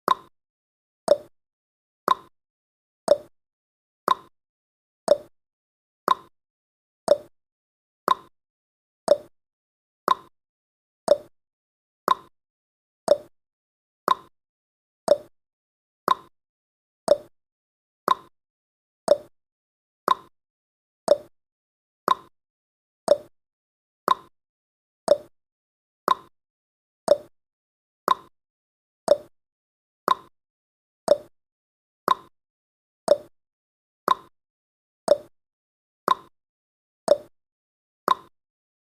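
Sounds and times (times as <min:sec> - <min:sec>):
clock ticking: 0:01.1 - 0:01.3, 0:03.1 - 0:03.3, 0:05.1 - 0:05.3, 0:07.1 - 0:07.3, 0:09.1 - 0:09.3, 0:11.1 - 0:11.3, 0:13.1 - 0:13.3, 0:15.1 - 0:15.3, 0:19.1 - 0:19.3, 0:21.1 - 0:21.3, 0:29.1 - 0:29.3, 0:31.1 - 0:31.3, 0:33.1 - 0:33.3, 0:35.1 - 0:35.3, 0:37.1 - 0:37.3.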